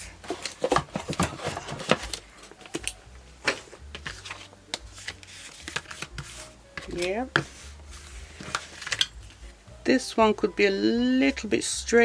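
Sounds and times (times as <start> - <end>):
paper rustling: 0.0 - 9.5.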